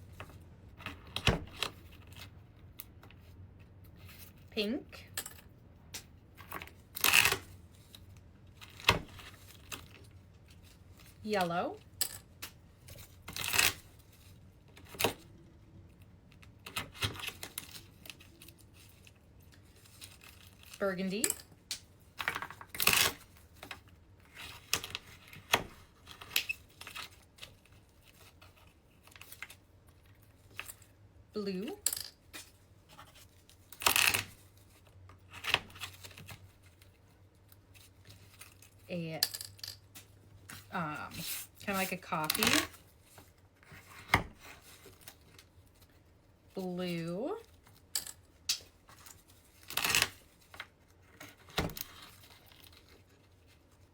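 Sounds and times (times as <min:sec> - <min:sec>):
crinkling rustle: 0:06.1 - 0:20.8, 0:32.2 - 0:38.9, 0:47.3 - 0:53.9.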